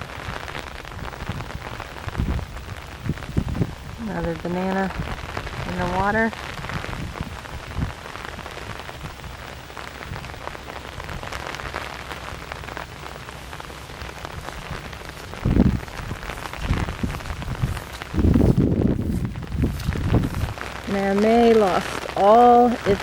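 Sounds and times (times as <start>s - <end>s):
heavy rain falling: 0.0s - 23.0s
short low rumbles: 14.2s - 20.7s.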